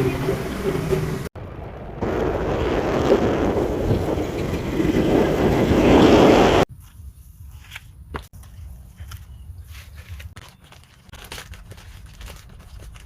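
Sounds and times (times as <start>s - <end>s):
wind buffeting microphone: 0.0s - 6.7s.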